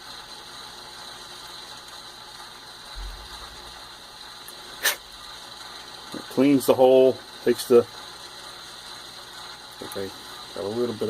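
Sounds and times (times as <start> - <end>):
faint mechanical hum: 0.0 - 11.0
soft low thump: 3.0 - 3.3
short sharp scrape: 4.8 - 5.1.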